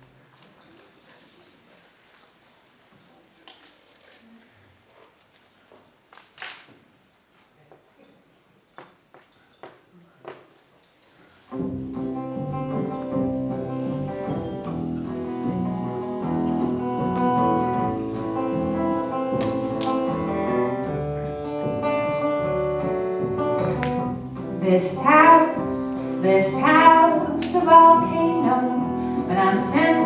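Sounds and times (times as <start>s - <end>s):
acoustic folk band playing: 11.5s - 30.0s
plucked acoustic guitar: 11.5s - 30.0s.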